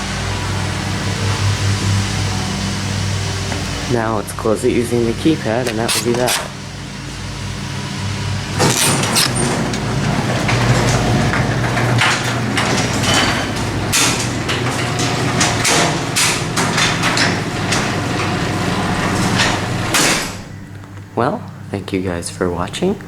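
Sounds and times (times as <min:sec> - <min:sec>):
garage door opener motor hum: 0:00.0 - 0:23.0
garage door clicks and knocks: 0:05.5 - 0:06.6, 0:08.5 - 0:20.5.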